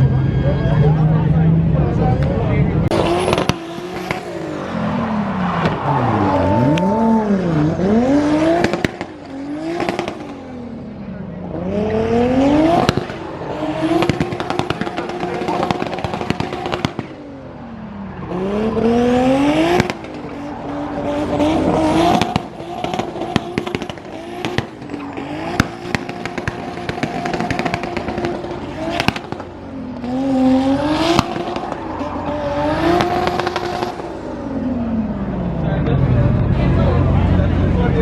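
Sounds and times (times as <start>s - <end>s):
race car engine revving: 0.0s - 38.0s
tyre noise: 2.8s - 10.5s.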